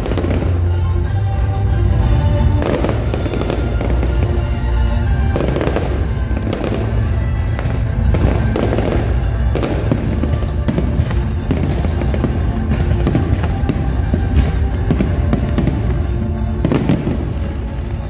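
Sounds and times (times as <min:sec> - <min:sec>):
fireworks bursting and crackling: 0:00.0 - 0:18.0
loud music with heavy bass: 0:00.0 - 0:18.0.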